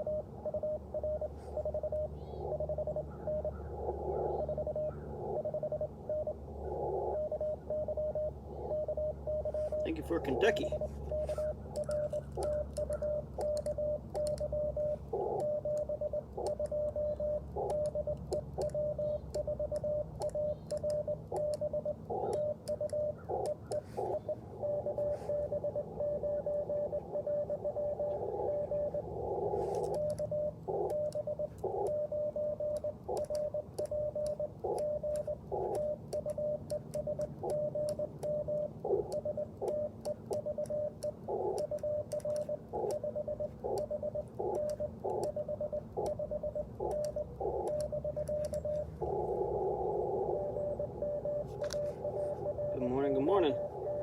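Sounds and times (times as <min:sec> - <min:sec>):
morse code beeps: 0:00.0 - 0:03.5, 0:07.1 - 0:54.0
faint clicks: 0:11.1 - 0:24.2, 0:29.7 - 0:32.0, 0:32.7 - 0:49.2.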